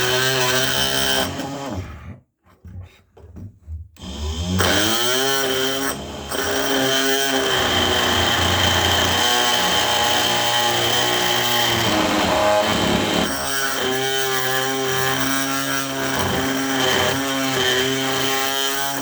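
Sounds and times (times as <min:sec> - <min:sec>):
oscillating multi-tool whining: 0:04.0 - 0:19.0.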